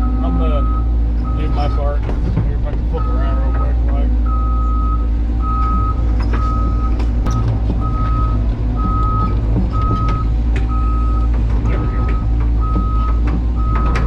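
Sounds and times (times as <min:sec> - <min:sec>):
heavy diesel engine running: 0:00.0 - 0:14.0
backup alarm beeping: 0:03.0 - 0:03.6, 0:04.2 - 0:14.0.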